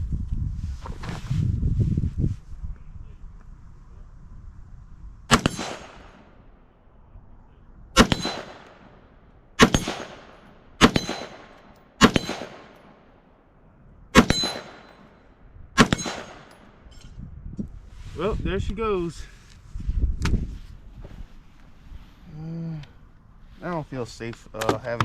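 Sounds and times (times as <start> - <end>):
rifle shots: 5.3 - 6.4, 8.0 - 9.0, 9.6 - 13.2, 14.1 - 15.2, 15.8 - 16.9
steel target clanging: 8.0 - 8.7, 10.8 - 12.8, 14.2 - 15.2, 15.8 - 17.1.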